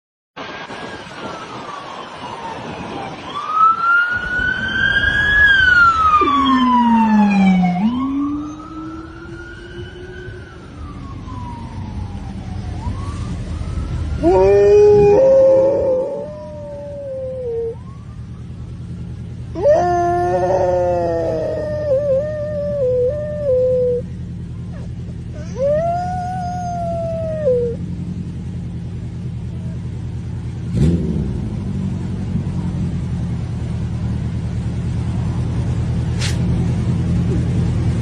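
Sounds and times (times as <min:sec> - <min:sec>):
wailing siren: 0:00.4 - 0:28.0
dog howling: 0:14.2 - 0:17.8, 0:19.6 - 0:24.0, 0:24.8 - 0:27.8.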